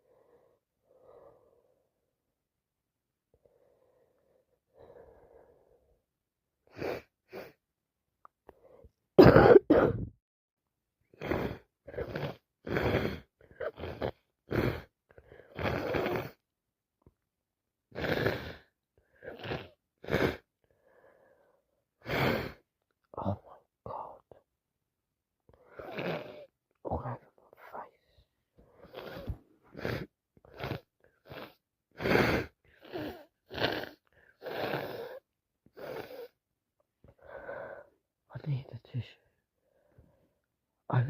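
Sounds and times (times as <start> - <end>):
person coughing hard: 9.2 - 10.1.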